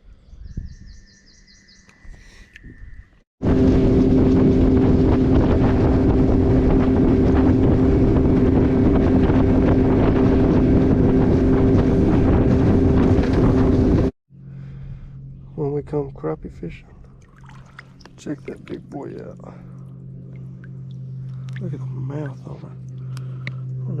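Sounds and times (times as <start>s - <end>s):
wind noise on microphone: 0.0s - 1.3s, 1.9s - 14.2s
motorboat engine running: 3.4s - 24.0s.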